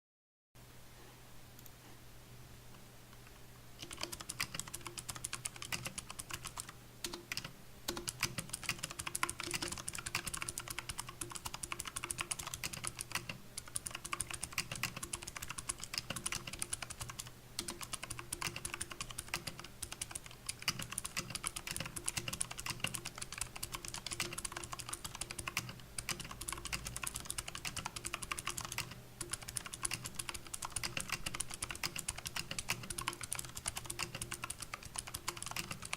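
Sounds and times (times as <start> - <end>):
mechanical keyboard typing: 3.8 - 35.9.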